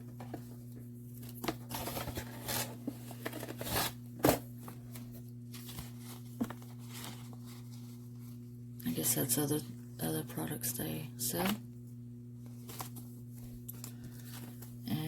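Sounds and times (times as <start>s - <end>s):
steady low hum: 0.0s - 15.0s
paper rustling and crinkling: 1.1s - 8.5s, 12.4s - 14.8s.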